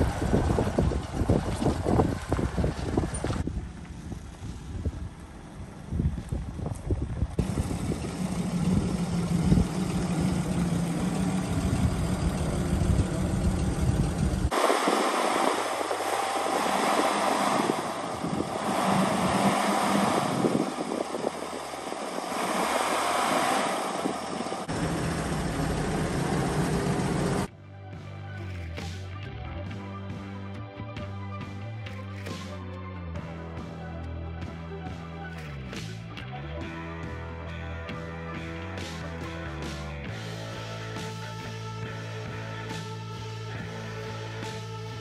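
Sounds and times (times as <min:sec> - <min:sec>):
vehicle engine idling: 0:00.0 - 0:27.5
noisier higher engine sound: 0:00.0 - 0:27.7.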